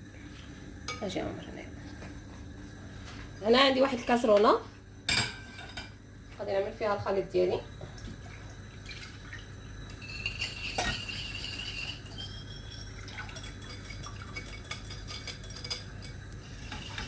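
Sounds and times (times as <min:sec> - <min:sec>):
utensil scraping against bowl: 0:09.9 - 0:17.0.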